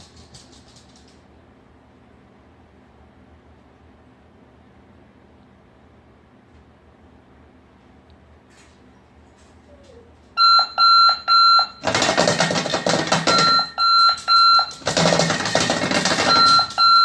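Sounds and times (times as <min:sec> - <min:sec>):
alarm clock high beeps: 0:10.4 - 0:11.9, 0:13.2 - 0:17.0
bed shaker buzzing in tin pot: 0:14.7 - 0:16.8.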